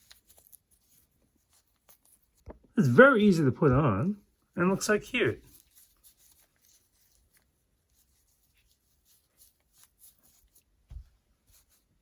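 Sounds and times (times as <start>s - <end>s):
plush puppets rustling: 0.0s - 12.0s.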